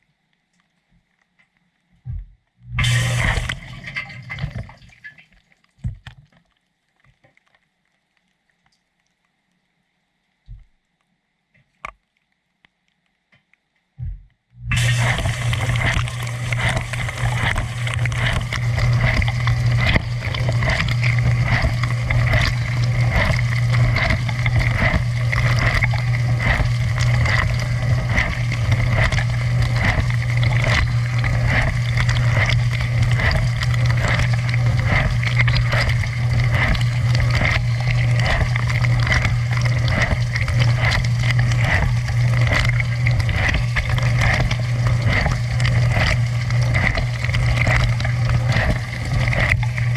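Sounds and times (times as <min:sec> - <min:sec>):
dishwasher pump humming: 0:02.7 - 0:05.0, 0:14.6 - 0:49.9
water spraying and splashing: 0:02.8 - 0:05.0, 0:14.7 - 0:49.9.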